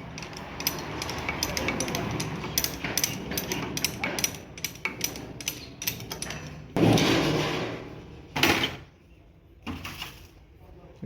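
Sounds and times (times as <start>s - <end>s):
hand tools clicking on metal: 0.0s - 6.7s.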